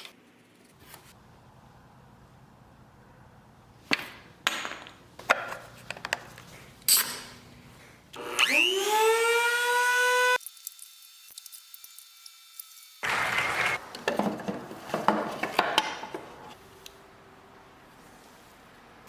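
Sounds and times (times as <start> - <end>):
rotary tool whine: 8.2 - 10.4
wood and tools knocking: 14.0 - 16.3.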